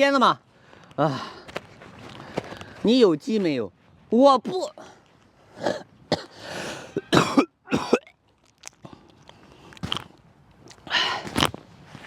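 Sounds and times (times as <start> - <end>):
man coughing harshly: 5.6 - 8.1.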